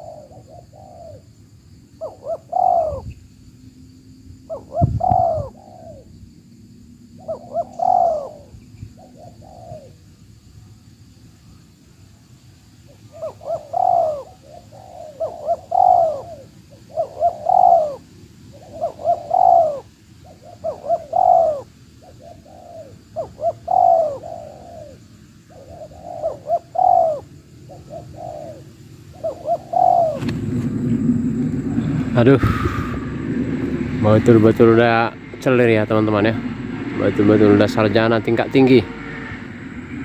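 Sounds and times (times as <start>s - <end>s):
dove cooing: 0.0s - 3.2s, 4.4s - 6.2s, 7.2s - 10.1s, 12.8s - 34.4s.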